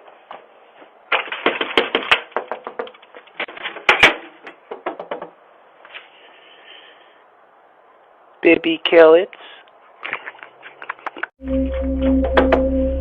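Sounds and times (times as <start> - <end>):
rapid irregular clicks and knocks: 1.1 - 5.4.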